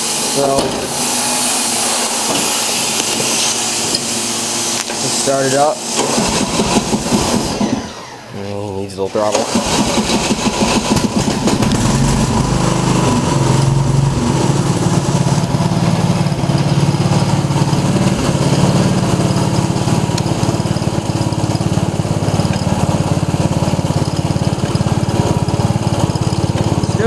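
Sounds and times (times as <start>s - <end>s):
riding mower engine running: 9.3s - 27.0s.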